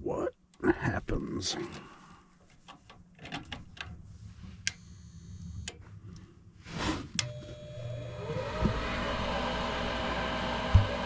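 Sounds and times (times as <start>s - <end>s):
furnace motor whine: 7.2s - 11.0s.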